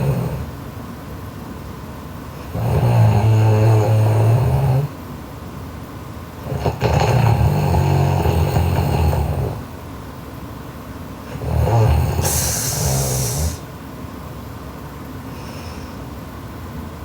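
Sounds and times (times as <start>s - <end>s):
girl snoring loudly: 0.0s - 0.5s, 2.4s - 4.9s, 6.4s - 9.6s, 11.3s - 13.6s.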